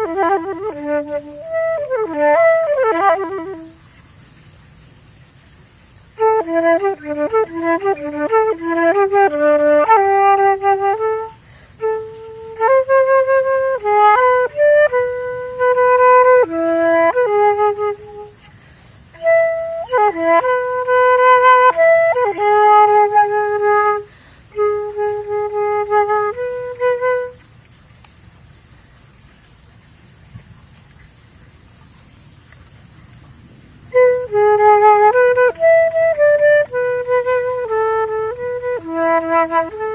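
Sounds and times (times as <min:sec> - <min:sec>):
solo flute melody: 0:00.0 - 0:04.0, 0:06.1 - 0:27.8, 0:33.9 - 0:39.9
faint steady hiss: 0:00.0 - 0:39.9.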